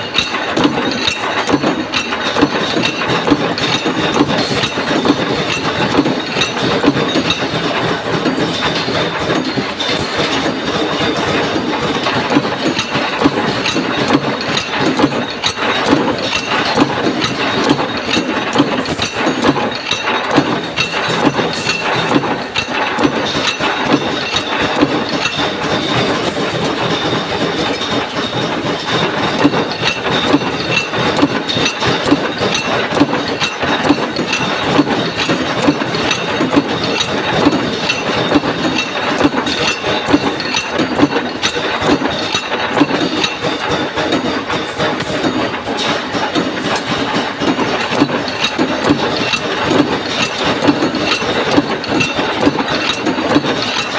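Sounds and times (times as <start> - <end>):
machine clatter: 0.0 - 53.9.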